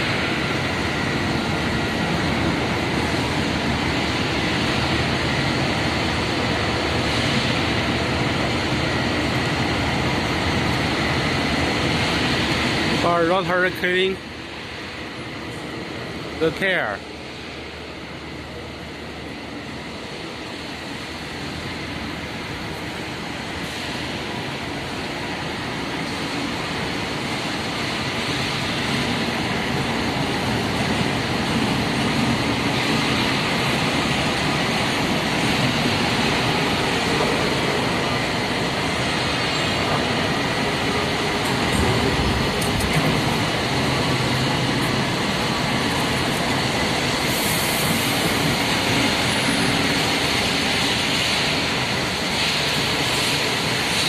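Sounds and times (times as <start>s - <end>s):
workshop machinery drone and hiss: 0.0s - 54.0s.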